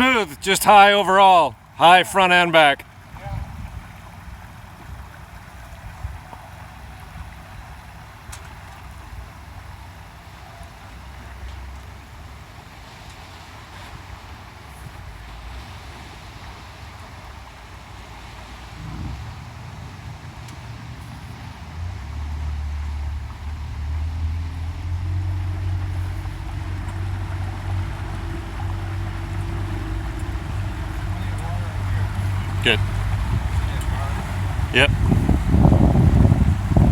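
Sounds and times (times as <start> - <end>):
boat engine rumble: 0.0 - 36.9
rushing water: 0.0 - 36.9
wind noise: 3.0 - 7.9, 18.4 - 36.9.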